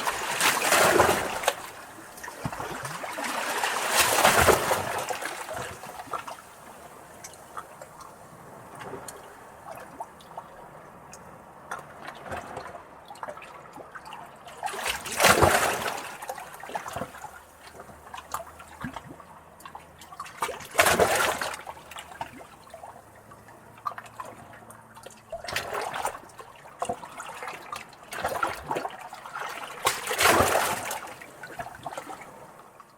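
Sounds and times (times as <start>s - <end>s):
wave splashing on rocks: 0.0s - 7.0s, 14.8s - 17.3s, 29.7s - 32.3s
water trickling among rocks: 0.0s - 12.4s, 13.9s - 32.9s.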